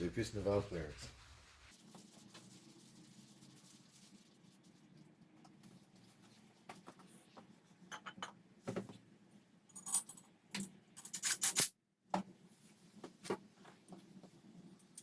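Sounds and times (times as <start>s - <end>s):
metal tools clinking: 9.7s - 10.3s.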